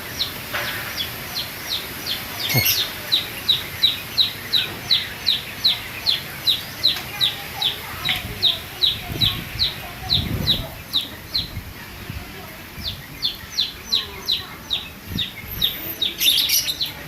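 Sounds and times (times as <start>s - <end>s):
lower falling bird call: 0.0s - 7.8s
bird chirping: 0.0s - 11.8s, 12.7s - 17.0s.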